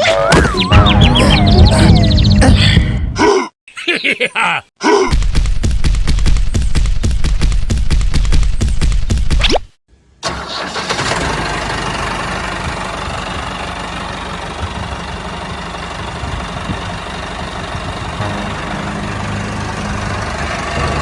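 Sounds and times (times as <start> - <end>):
tractor engine running: 10.2 - 21.0.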